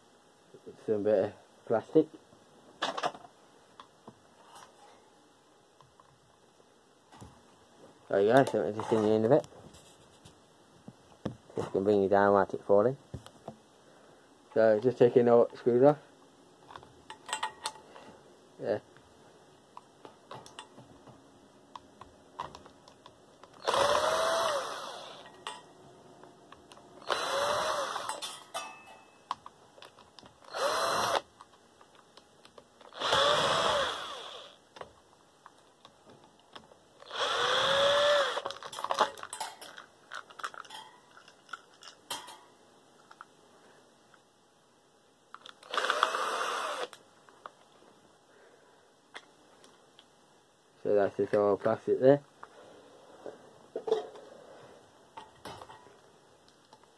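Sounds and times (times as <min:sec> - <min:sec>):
cordless drill spinning: 0:23.6 - 0:25.4, 0:27.0 - 0:28.2, 0:30.4 - 0:31.3, 0:32.8 - 0:34.6, 0:37.0 - 0:38.6, 0:45.6 - 0:47.0.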